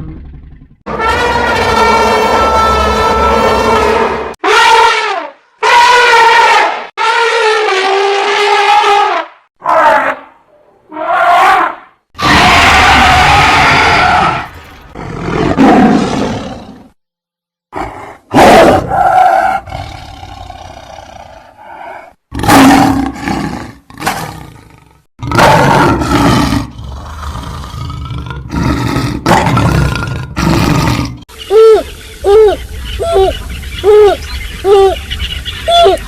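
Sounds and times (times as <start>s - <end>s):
creature roaring: 11.0s - 16.9s, 17.8s - 31.2s.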